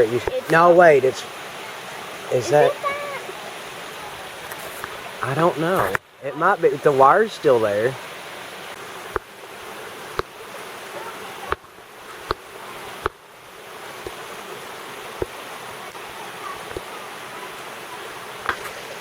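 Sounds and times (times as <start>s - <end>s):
creek water running: 0.0s - 19.0s
sharp knocks: 11.5s - 13.3s, 15.2s - 15.4s.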